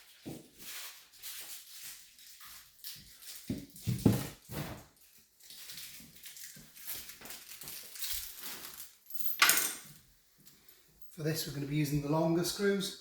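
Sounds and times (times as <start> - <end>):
plastic packet rustling: 0.0 - 9.1.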